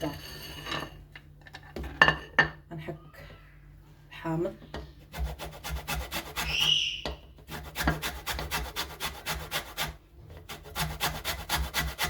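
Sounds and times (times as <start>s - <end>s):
grater rasping lemon rind: 5.1s - 6.8s, 7.5s - 12.0s
short high-pitched squeak: 6.4s - 7.1s.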